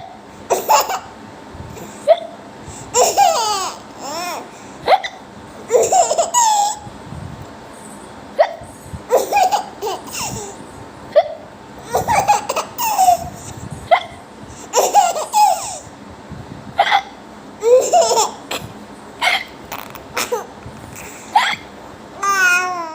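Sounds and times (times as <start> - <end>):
baby laughing: 0.5 - 1.1, 2.9 - 6.8, 9.1 - 10.6, 11.2 - 14.1, 14.7 - 15.9, 16.8 - 22.9
person hiccuping: 16.8 - 17.2.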